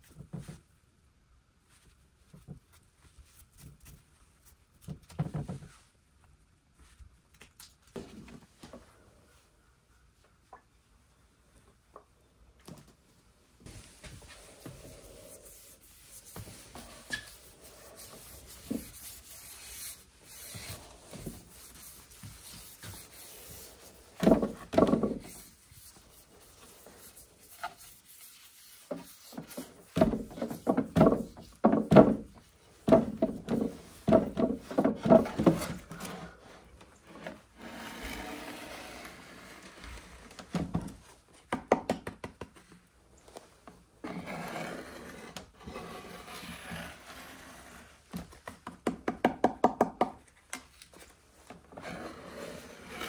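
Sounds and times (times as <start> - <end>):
hand rubbing on wood: 13.7 - 35.2.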